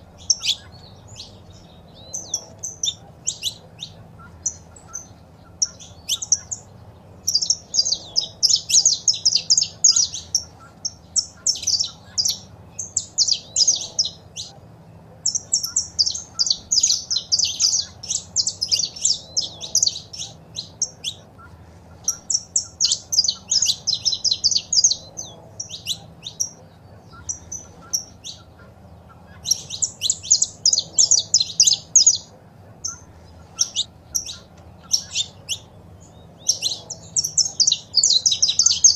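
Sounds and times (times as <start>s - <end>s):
faint low hum: 0.0s - 38.9s
finches chirping: 0.0s - 38.9s.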